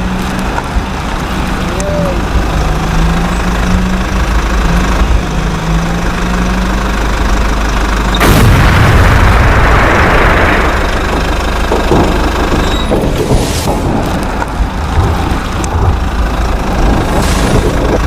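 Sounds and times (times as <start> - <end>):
engine-like drone: 0.0 - 18.0
sudden loud burst of noise: 8.2 - 14.0.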